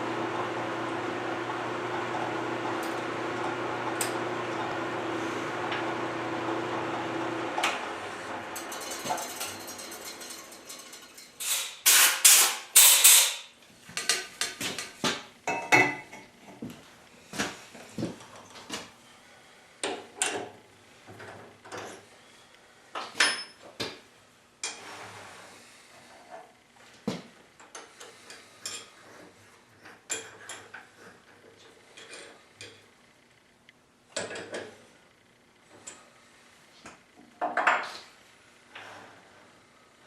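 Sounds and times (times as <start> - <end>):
steel tools clinking and knocking: 8.6 - 13.4.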